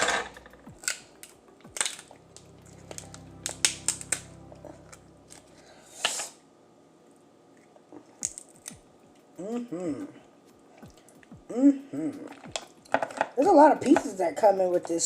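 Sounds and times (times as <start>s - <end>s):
crab shells cracking: 0.4s - 4.2s, 8.1s - 8.9s.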